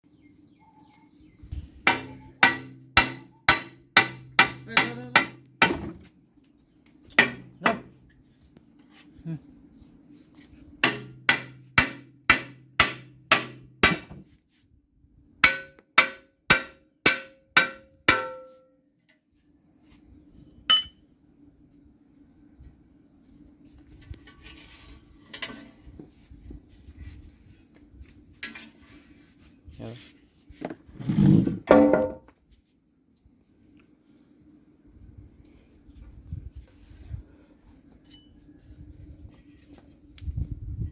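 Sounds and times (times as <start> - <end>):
hammer blows on metal: 1.8 - 5.8, 15.4 - 18.7.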